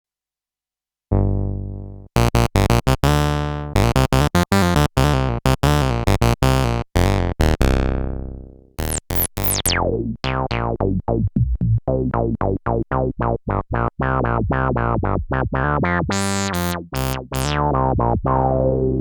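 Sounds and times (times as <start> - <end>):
synthesizer staccato notes: 1.1 - 12.4, 14.1 - 18.9
synth zaps with falling pitch: 8.8 - 10.0.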